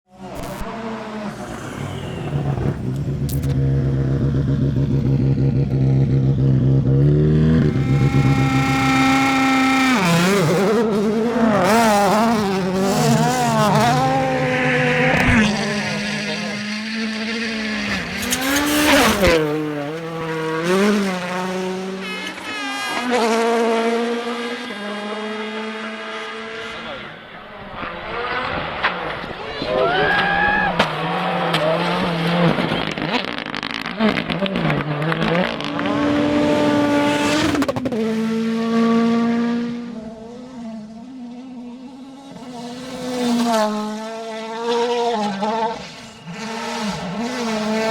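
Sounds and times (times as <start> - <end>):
rally car engines at full throttle: 0.1 - 47.9
engine crackle at gear change: 0.2 - 6.4
loud rush of noise: 0.3 - 3.9, 7.5 - 10.3.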